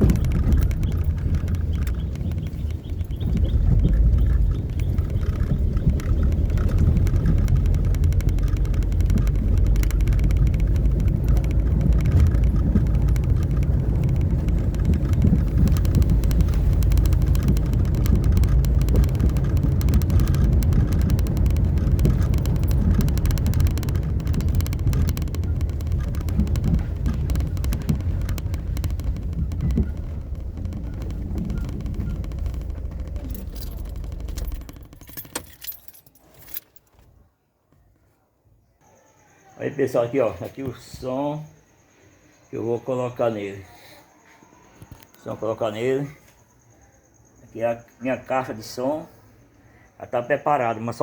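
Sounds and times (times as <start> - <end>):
road and wind noise: 0.0 - 37.2.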